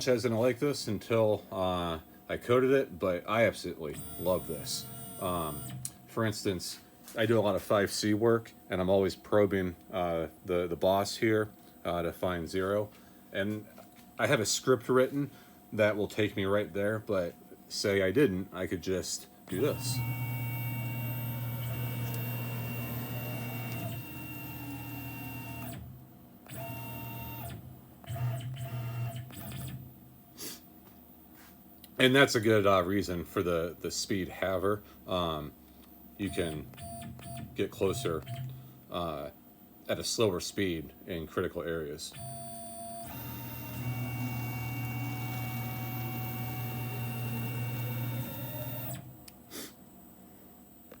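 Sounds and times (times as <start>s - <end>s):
mill axis motors whining: 4.0s - 5.9s, 19.5s - 25.9s, 26.5s - 29.8s, 42.1s - 49.2s.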